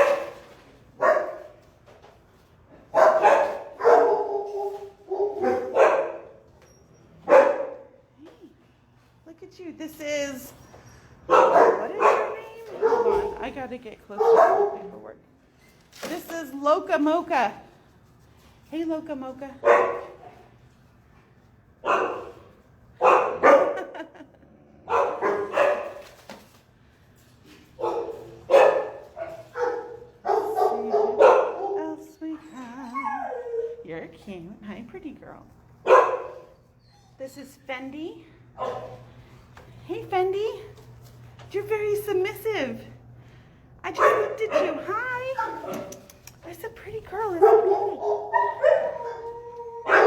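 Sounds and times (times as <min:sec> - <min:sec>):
dogs barking: 0:00.0 - 0:00.4, 0:01.0 - 0:01.6, 0:02.9 - 0:06.4, 0:07.2 - 0:08.0, 0:11.3 - 0:13.5, 0:14.1 - 0:14.9, 0:19.6 - 0:20.5, 0:21.8 - 0:24.1, 0:24.8 - 0:26.0, 0:27.8 - 0:32.0, 0:35.8 - 0:36.6, 0:38.6 - 0:39.1, 0:44.0 - 0:46.0, 0:47.4 - 0:50.0.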